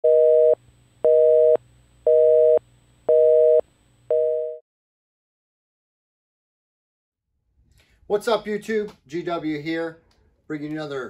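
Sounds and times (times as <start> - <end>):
telephone busy signal beeps: 0.0 - 4.6.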